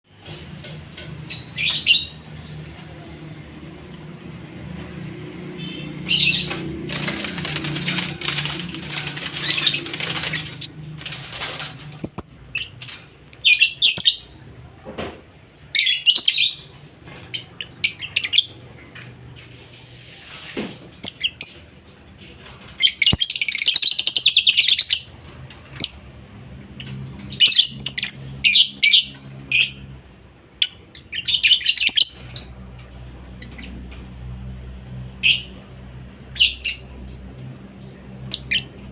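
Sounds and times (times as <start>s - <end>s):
bird chirping and trilling: 5.6s - 7.3s, 9.0s - 12.8s, 15.7s - 16.7s, 22.8s - 25.1s, 30.6s - 32.6s, 38.2s - 38.9s.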